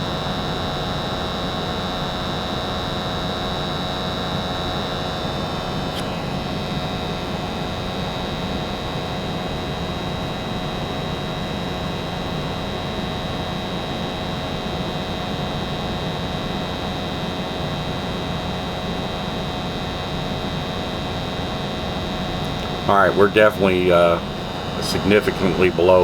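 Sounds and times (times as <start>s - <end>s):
faint high whine: 0.0s - 26.0s
gas furnace blower humming: 18.5s - 26.0s.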